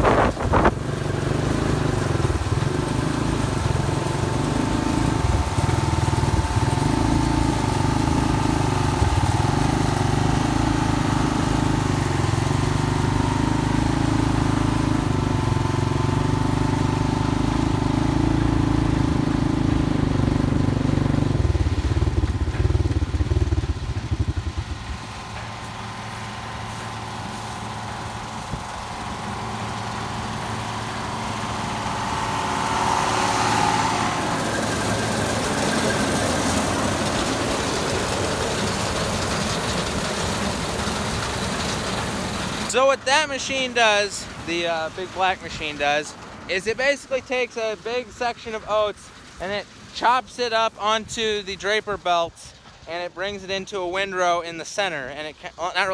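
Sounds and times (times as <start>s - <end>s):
swather engine running: 0.0s - 55.9s.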